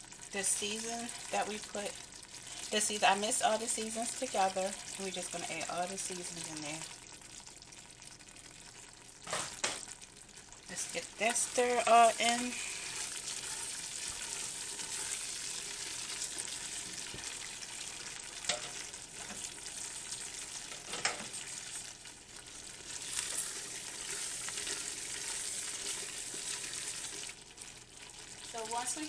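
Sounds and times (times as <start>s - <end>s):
vegetables sizzling in a pot: 0.0s - 29.0s
spoon stirring: 12.0s - 16.9s, 22.8s - 27.3s.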